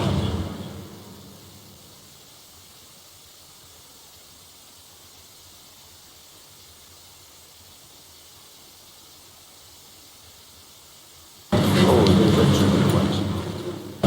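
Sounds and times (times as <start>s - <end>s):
faint low hum: 0.0s - 2.4s, 11.5s - 14.0s
steady hiss: 0.0s - 14.0s.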